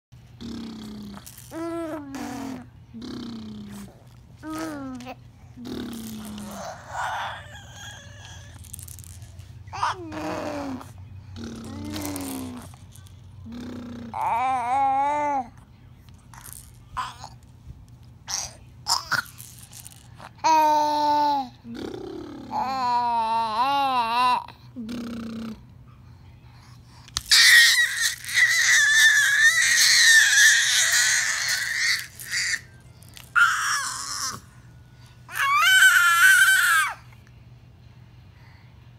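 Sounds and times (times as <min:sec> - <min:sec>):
baby babbling: 0:00.5 - 0:08.6, 0:09.7 - 0:12.7, 0:13.5 - 0:15.5, 0:22.4 - 0:24.6
baby squealing: 0:06.3 - 0:08.6, 0:27.3 - 0:32.7, 0:33.3 - 0:34.4, 0:35.3 - 0:37.0.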